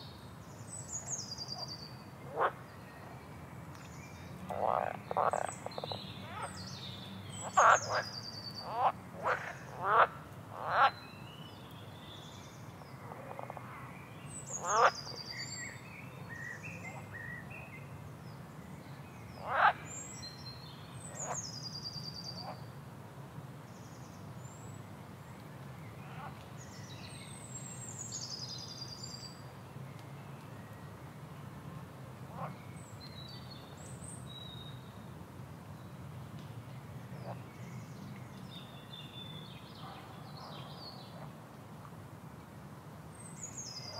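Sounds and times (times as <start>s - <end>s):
frog croaks: 2.3s - 2.6s, 4.5s - 6.5s, 7.4s - 11.0s, 14.6s - 15.0s, 19.4s - 19.8s.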